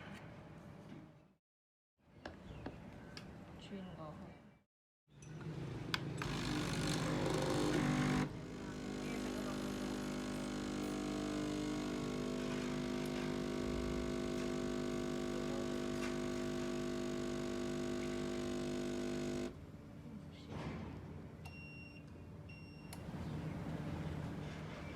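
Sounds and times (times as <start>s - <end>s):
espresso machine pump humming: 6.2s - 19.6s.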